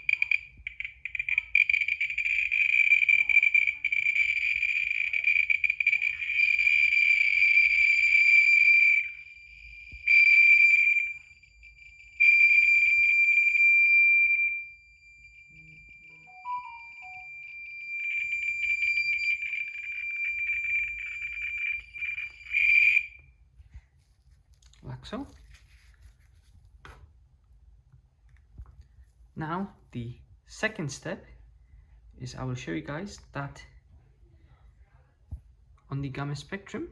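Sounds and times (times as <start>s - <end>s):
geiger counter buzzing clicks: 0.0s - 6.2s.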